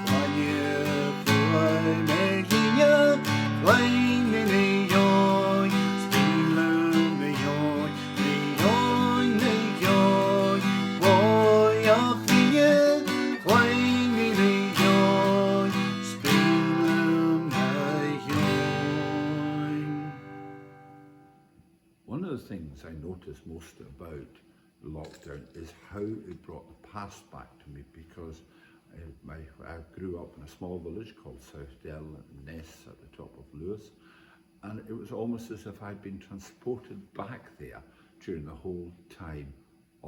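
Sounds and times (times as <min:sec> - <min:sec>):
acoustic guitar playing: 0:00.0 - 0:21.5.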